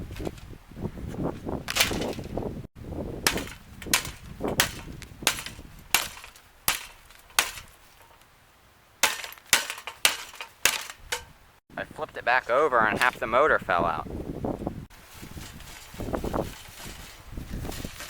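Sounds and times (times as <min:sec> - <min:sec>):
hard blows smashing a fan: 0:01.6 - 0:08.0, 0:09.0 - 0:11.4.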